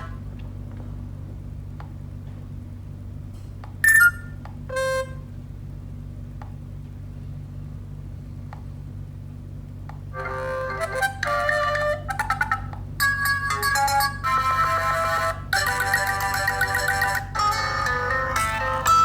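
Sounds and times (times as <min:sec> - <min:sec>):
steady low hum: 0:00.0 - 0:19.0
short electronic beeps: 0:03.8 - 0:04.3.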